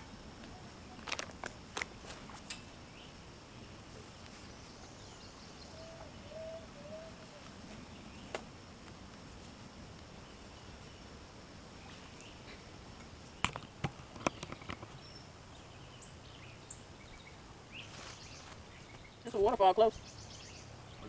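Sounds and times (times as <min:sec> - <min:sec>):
bird calls: 0:04.4 - 0:08.4, 0:13.3 - 0:21.0.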